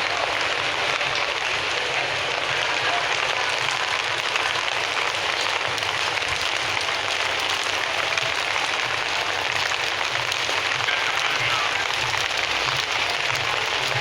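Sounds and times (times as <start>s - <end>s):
steady rain: 0.0s - 14.0s.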